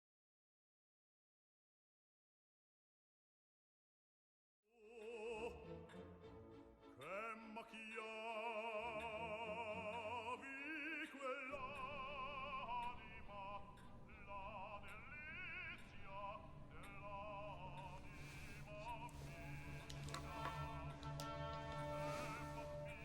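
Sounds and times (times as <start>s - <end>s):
accompanying music: 4.8s - 23.0s
operatic singing: 4.8s - 23.0s.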